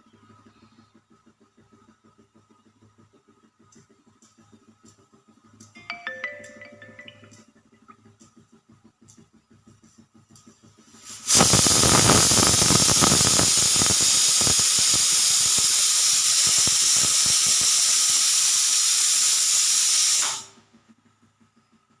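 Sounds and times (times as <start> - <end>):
pressure cooker whistle hissing: 11.0 - 20.6.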